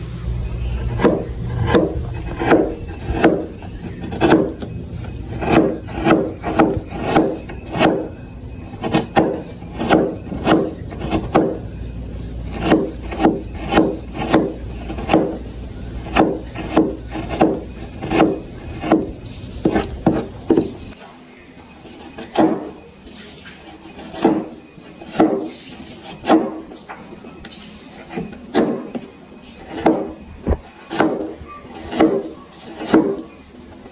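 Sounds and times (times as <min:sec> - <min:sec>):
low hum: 0:00.0 - 0:05.5
hand tool scraping wood: 0:00.6 - 0:11.7, 0:12.4 - 0:21.0, 0:21.8 - 0:26.8, 0:27.8 - 0:33.9.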